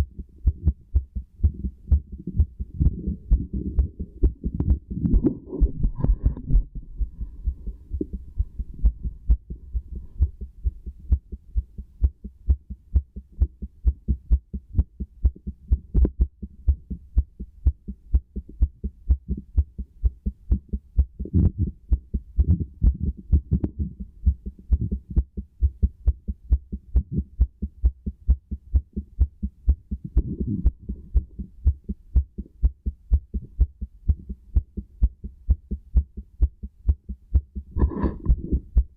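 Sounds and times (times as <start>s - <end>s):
low rustling noise: 0.0s - 12.1s, 37.6s - 38.9s
heartbeat through stethoscope: 0.0s - 38.9s.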